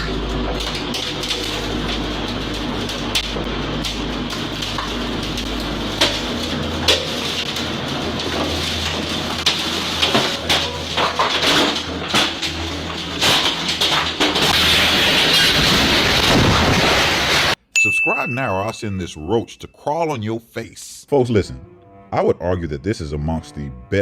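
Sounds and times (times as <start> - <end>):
debris cracking and clattering: 0.0 - 17.6.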